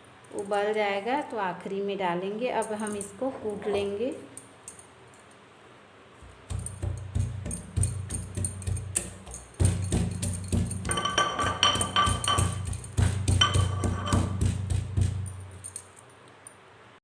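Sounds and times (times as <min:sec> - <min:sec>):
pestle pounding in a mortar: 0:06.2 - 0:15.6.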